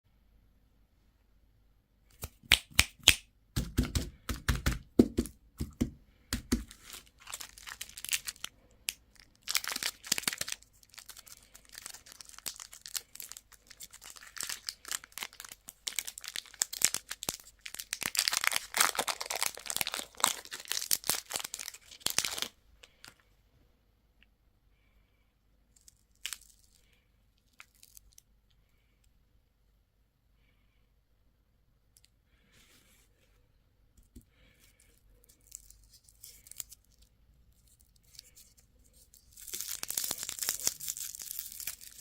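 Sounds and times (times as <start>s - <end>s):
plastic packaging crinkling: 6.4s - 23.2s, 25.8s - 26.9s, 27.5s - 28.2s, 35.2s - 42.0s.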